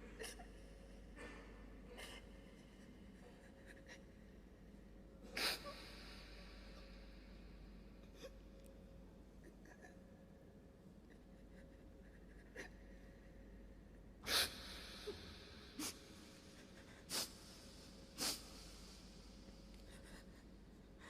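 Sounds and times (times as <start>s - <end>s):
short sharp sniffs: 17.1s - 19.2s.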